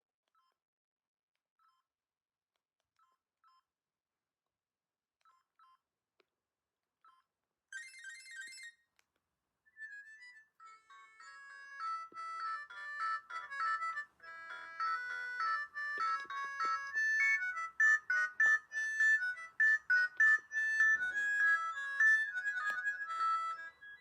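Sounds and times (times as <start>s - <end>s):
phone ringtone melody: 7.7s - 8.8s, 9.7s - 24.0s
mobile phone short beeps: 11.3s - 24.0s.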